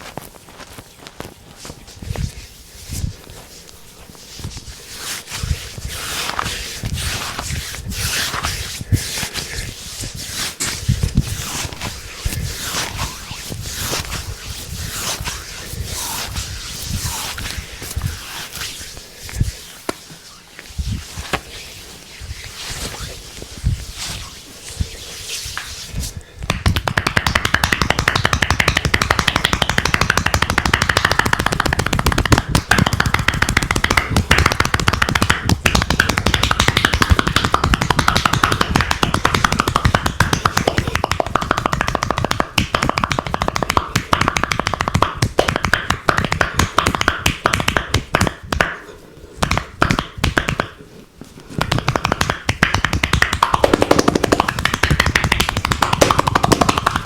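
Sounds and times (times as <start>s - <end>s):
hands slapping on body: 3.0s - 20.1s, 25.4s - 57.0s.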